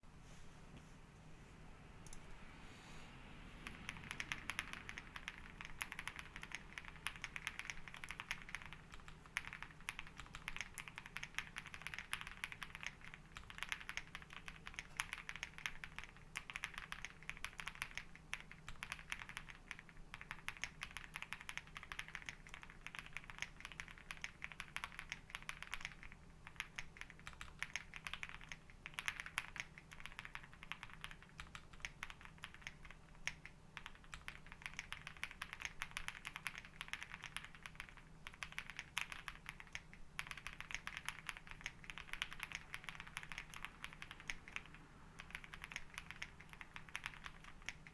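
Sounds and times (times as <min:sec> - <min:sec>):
mechanical keyboard typing: 0:03.6 - 0:47.9.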